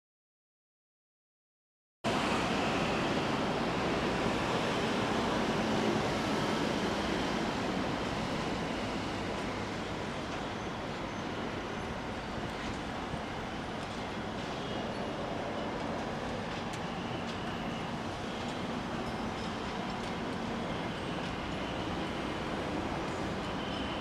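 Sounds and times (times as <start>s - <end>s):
city rumble and hiss: 2.1s - 24.0s.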